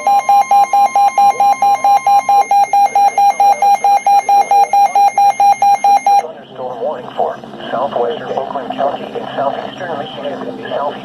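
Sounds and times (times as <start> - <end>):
rapid electronic beeping: 0.0 - 6.3.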